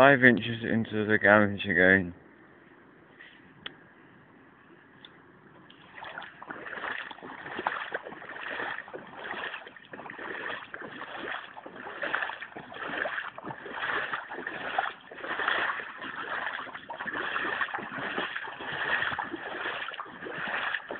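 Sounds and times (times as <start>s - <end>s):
floodwater splashing: 5.7s - 20.9s.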